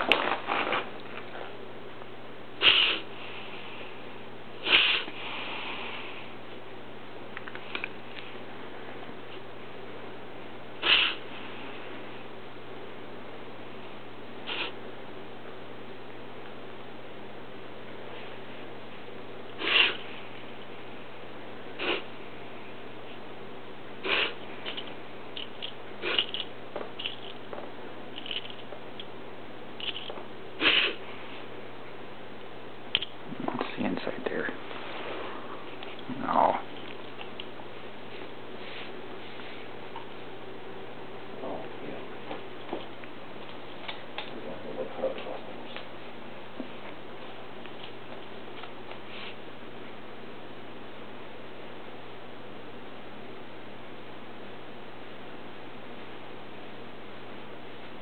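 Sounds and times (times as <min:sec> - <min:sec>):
dog reverse sneezing: 0:02.6 - 0:03.1, 0:04.6 - 0:05.8, 0:10.8 - 0:11.3, 0:14.4 - 0:14.8, 0:19.6 - 0:20.1, 0:21.8 - 0:22.1, 0:24.0 - 0:24.4, 0:26.0 - 0:26.4, 0:30.6 - 0:31.0.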